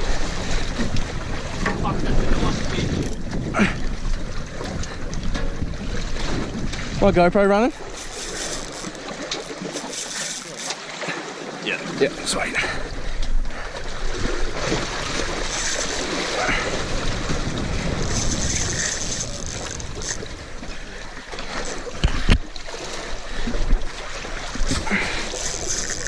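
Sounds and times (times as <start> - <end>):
wind buffeting microphone: 0.0 - 8.9, 12.5 - 21.2
water sloshing against boat: 0.0 - 26.0.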